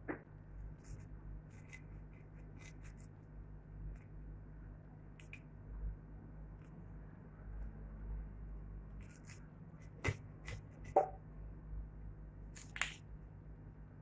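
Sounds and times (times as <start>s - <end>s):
lemon peel scraped by hand: 0.8s - 3.1s, 9.0s - 11.1s.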